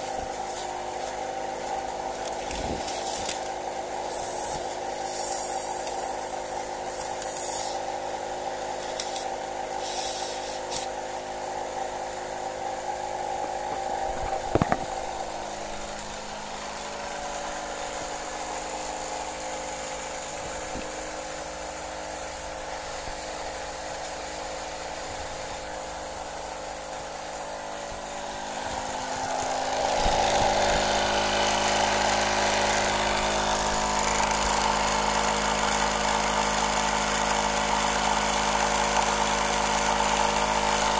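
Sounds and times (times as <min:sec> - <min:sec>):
compressor humming: 0:00.0 - 0:40.9.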